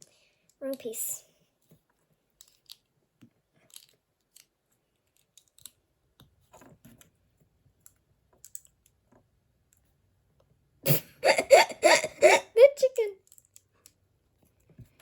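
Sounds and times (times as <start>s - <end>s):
small plastic parts clicking: 1.6s - 7.2s, 7.8s - 9.9s, 13.2s - 15.0s.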